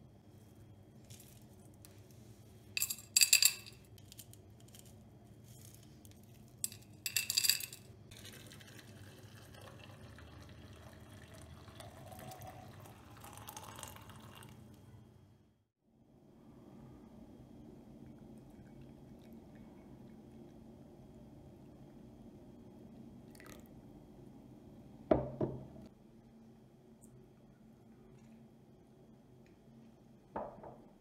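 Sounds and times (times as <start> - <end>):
liquid pouring into vessel: 8.1 - 14.6, 23.3 - 23.7.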